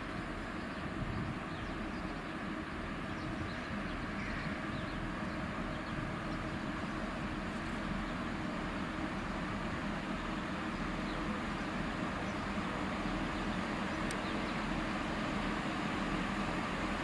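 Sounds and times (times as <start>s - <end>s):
diesel train rumbling: 0.0s - 17.0s.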